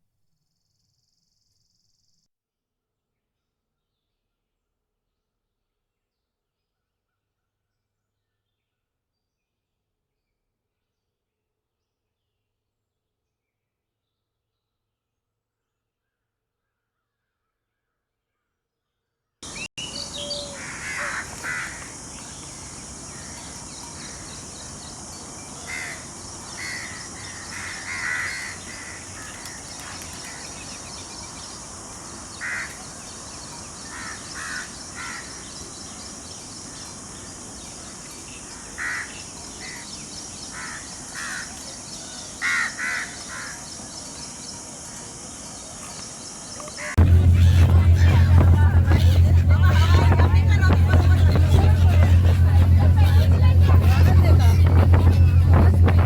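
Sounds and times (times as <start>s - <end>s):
loud low hum: 19.4s - 27.8s, 47.0s - 56.0s
steady high hiss: 19.5s - 41.1s
birds calling: 19.5s - 44.4s, 45.5s - 56.0s.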